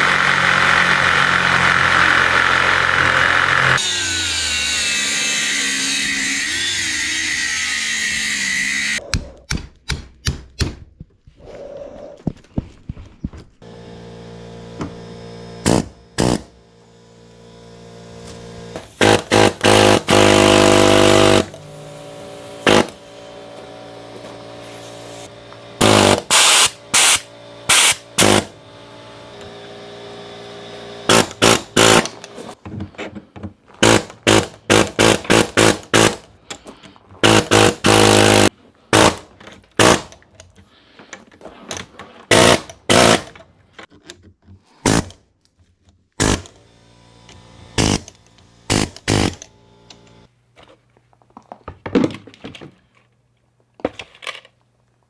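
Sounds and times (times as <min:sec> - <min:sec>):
cordless power tool bursts: 0:13.6 - 0:21.7, 0:22.6 - 0:23.0, 0:25.0 - 0:28.6, 0:31.0 - 0:32.3, 0:33.8 - 0:36.2, 0:37.2 - 0:40.1, 0:42.3 - 0:43.4, 0:46.2 - 0:49.5.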